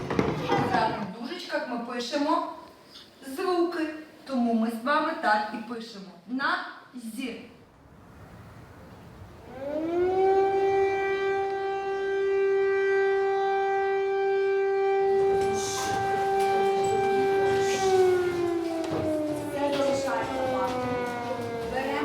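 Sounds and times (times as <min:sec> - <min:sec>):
air raid siren: 0:08.0 - 0:22.0.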